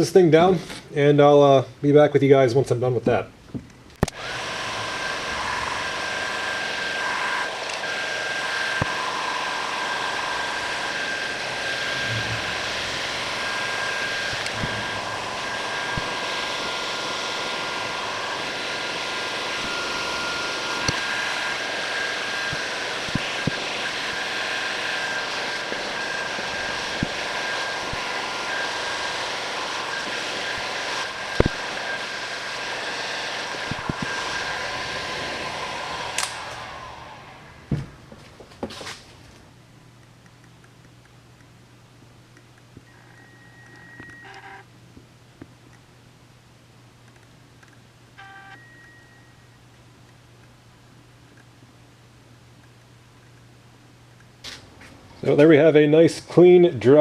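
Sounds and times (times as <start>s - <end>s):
heat gun blowing: 4.0s - 39.0s.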